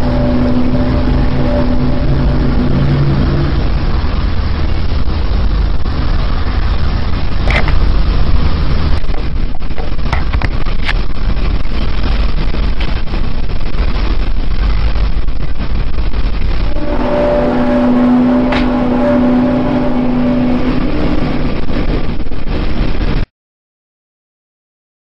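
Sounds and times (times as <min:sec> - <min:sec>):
droning hum: 0:00.0 - 0:23.2
low rumble: 0:00.0 - 0:23.2.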